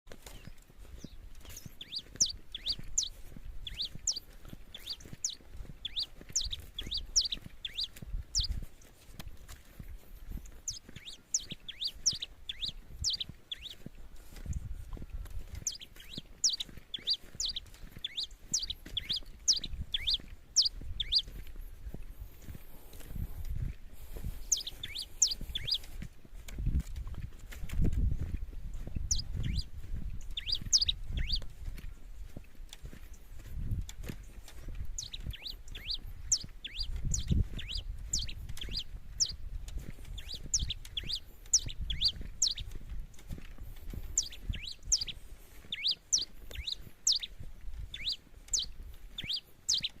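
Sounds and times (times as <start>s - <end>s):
finch singing rapid high chirps: 0.4s - 8.6s, 10.6s - 13.9s, 15.5s - 21.4s, 24.4s - 25.9s, 29.0s - 31.5s, 34.9s - 39.4s, 40.0s - 42.8s, 44.0s - 50.0s.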